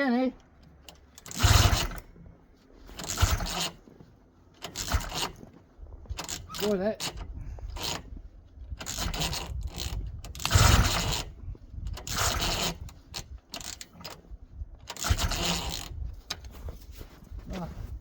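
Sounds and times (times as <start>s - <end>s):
recoil starter pulls: 0.3s - 17.2s.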